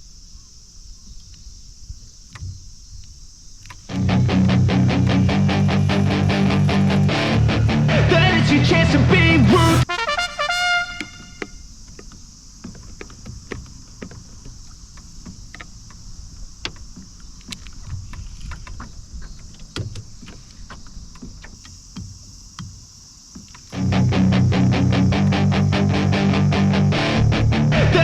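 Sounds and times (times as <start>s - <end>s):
steady high hiss: 0.0s - 18.5s, 21.4s - 28.0s
background music: 3.9s - 11.3s
light clicks and taps: 11.4s - 23.7s.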